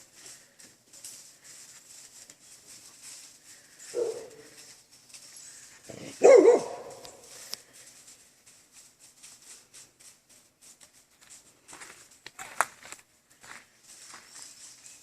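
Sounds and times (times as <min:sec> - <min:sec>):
faint ticks and scuffs: 0:00.0 - 0:15.0
dog barking: 0:03.9 - 0:04.5, 0:06.0 - 0:07.2.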